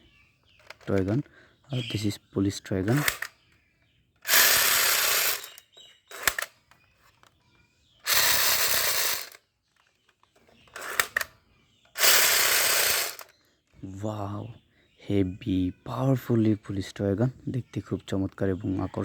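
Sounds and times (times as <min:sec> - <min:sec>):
toy gun mechanical rattle: 0:00.6 - 0:01.2, 0:02.8 - 0:03.4, 0:04.2 - 0:07.4, 0:08.0 - 0:13.4
short clicks: 0:02.9 - 0:03.3, 0:04.2 - 0:07.3, 0:10.7 - 0:11.3.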